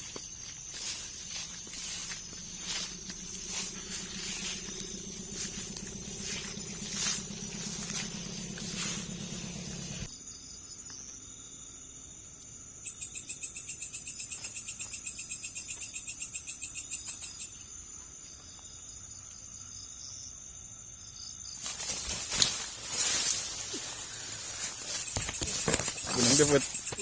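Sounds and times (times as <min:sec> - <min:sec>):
insects chirping: 0:00.0 - 0:27.0
rapid pulsed trill: 0:00.8 - 0:10.1.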